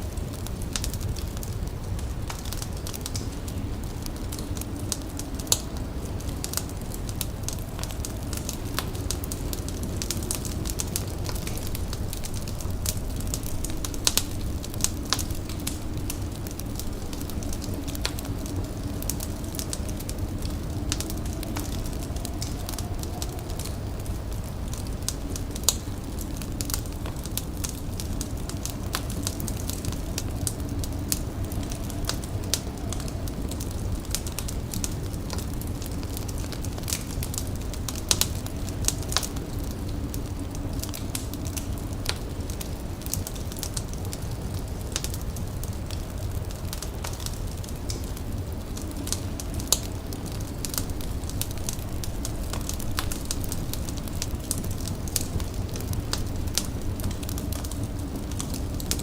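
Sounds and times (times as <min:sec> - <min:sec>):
steady low rumble: 0:00.0 - 0:59.0
wood fire crackling: 0:00.0 - 0:59.0.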